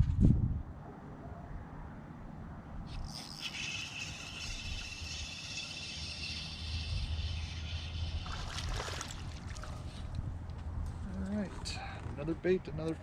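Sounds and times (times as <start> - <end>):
fish splashing: 7.5 - 10.1
water lapping around a boat: 7.6 - 10.2.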